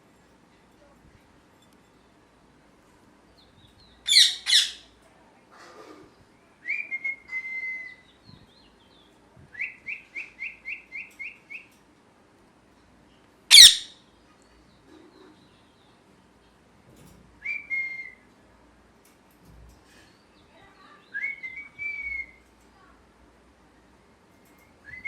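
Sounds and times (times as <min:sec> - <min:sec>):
parrot whistle: 0:04.1 - 0:04.8, 0:13.5 - 0:13.9
parrot chirps rising: 0:04.1 - 0:04.9, 0:13.5 - 0:14.0
parrot screeching: 0:04.1 - 0:04.9, 0:13.5 - 0:13.9.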